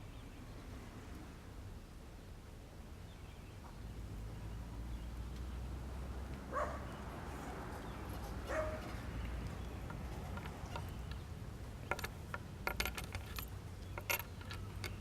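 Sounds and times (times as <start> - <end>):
dog barking: 6.5 - 6.9, 8.4 - 8.9.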